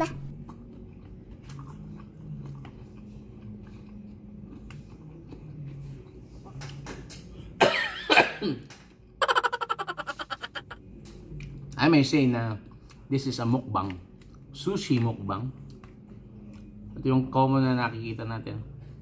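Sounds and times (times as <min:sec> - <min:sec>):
soft chewing: 0:00.3 - 0:07.4, 0:10.8 - 0:11.8, 0:12.6 - 0:17.0
throat coughs: 0:07.6 - 0:08.7.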